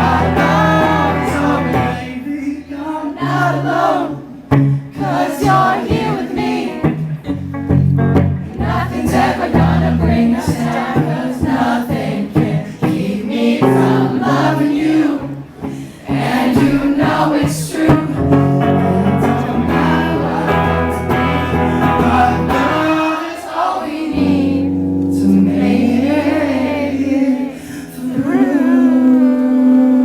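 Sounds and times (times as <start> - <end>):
guitar accompaniment: 0.0 - 2.2, 4.3 - 23.2, 24.1 - 29.1
person singing long held notes: 24.1 - 30.0.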